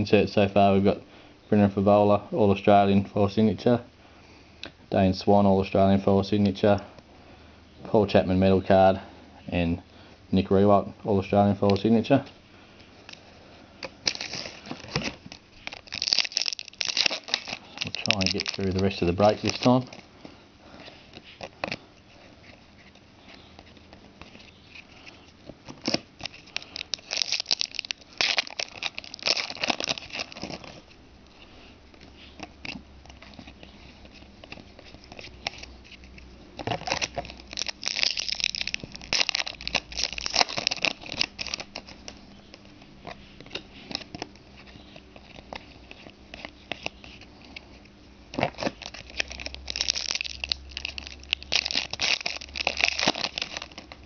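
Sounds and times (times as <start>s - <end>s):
cards being handled: 12.9s - 54.0s
wrappers tearing and crinkling: 13.9s - 20.0s, 25.8s - 30.9s, 34.1s - 42.3s, 48.3s - 54.0s.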